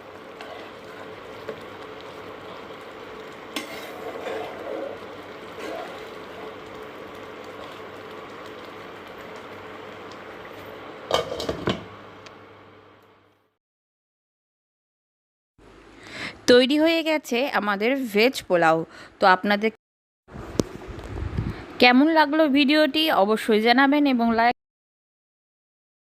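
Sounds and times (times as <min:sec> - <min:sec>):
rice simmering in covered pan: 0:00.0 - 0:12.2
pot and utensil clattering: 0:11.1 - 0:11.9.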